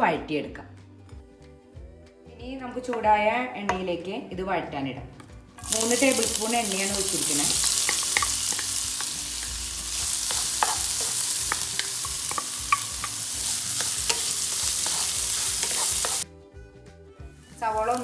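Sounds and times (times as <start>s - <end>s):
food sizzling in hot oil: 5.6s - 16.2s, 17.4s - 18.0s
utensil clicking against pan: 5.6s - 16.2s.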